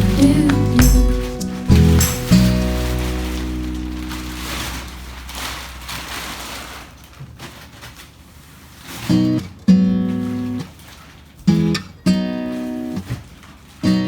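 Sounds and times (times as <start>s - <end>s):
acoustic guitar strumming chords: 0.0s - 7.0s
soft hiss: 0.0s - 7.9s.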